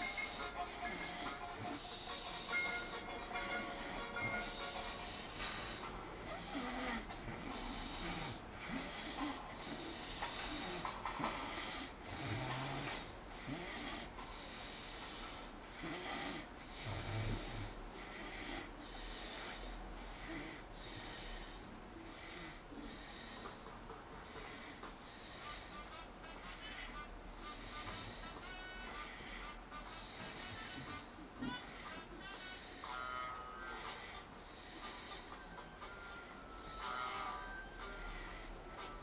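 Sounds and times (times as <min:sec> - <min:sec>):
man snoring: 0:00.0 - 0:35.5, 0:36.3 - 0:39.0.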